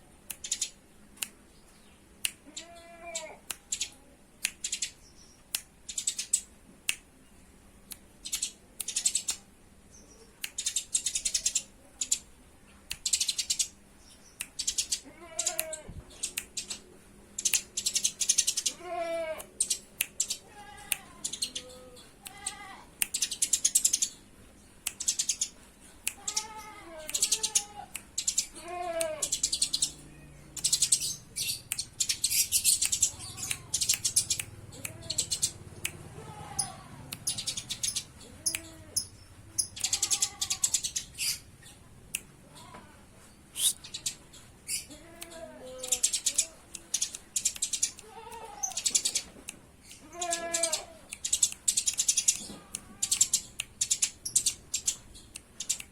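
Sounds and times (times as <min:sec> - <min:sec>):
sparrows chirping harshly: 0:29.2 - 0:35.7, 0:36.5 - 0:41.8.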